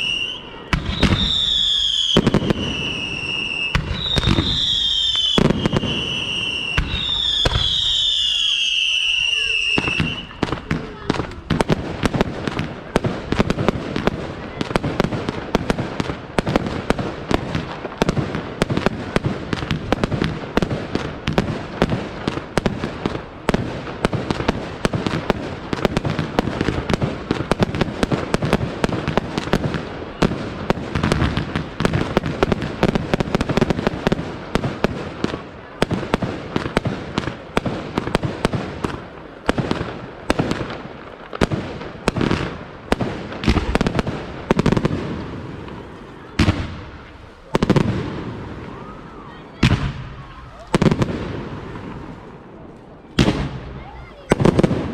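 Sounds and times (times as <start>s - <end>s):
fireworks bursting and banging: 0.0s - 54.9s.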